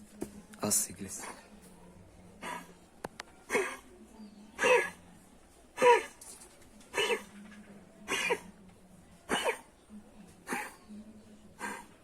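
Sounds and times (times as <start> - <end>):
puppy coughing: 2.4 - 2.8, 3.5 - 3.9, 4.6 - 5.0, 5.8 - 6.2, 6.9 - 7.3, 8.1 - 8.6, 9.3 - 9.7, 10.4 - 10.8, 11.6 - 12.0.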